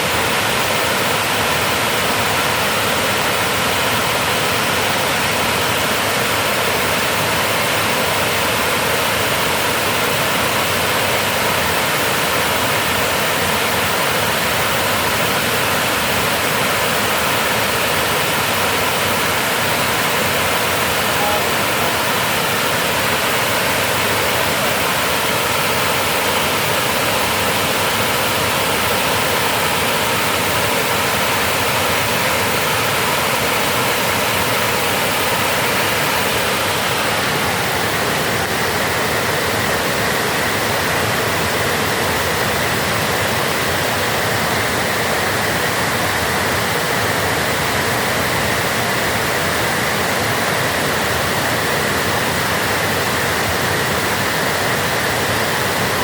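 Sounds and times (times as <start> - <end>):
water rushing and pouring: 7.3 - 42.2.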